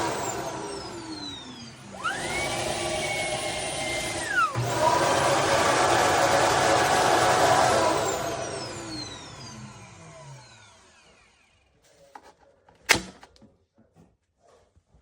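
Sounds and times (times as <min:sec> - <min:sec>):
vacuum motor whine spinning down: 0:00.0 - 0:11.7.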